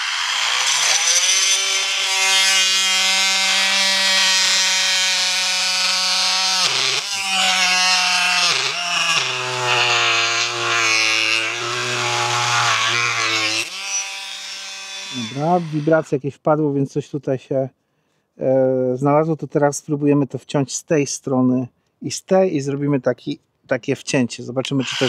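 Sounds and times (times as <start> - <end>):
oscillating multi-tool cutting wood: 0.0 - 16.1, 24.6 - 25.0.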